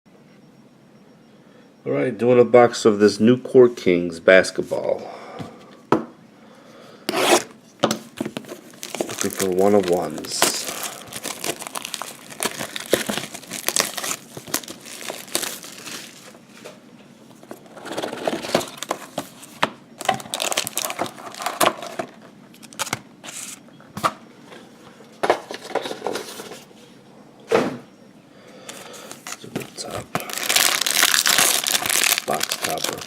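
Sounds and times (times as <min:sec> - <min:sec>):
plastic wrapping crinkling and tearing: 0:08.4 - 0:16.4, 0:20.0 - 0:23.5, 0:29.1 - 0:33.0.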